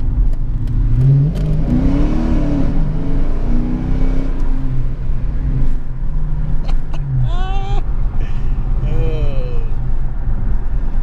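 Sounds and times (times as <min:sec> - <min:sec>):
car engine accelerating hard: 0:00.0 - 0:07.2.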